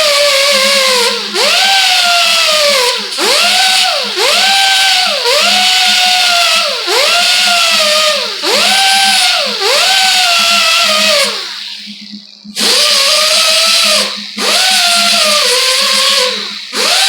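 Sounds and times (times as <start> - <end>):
high-revving power tool: 0.0 - 17.0.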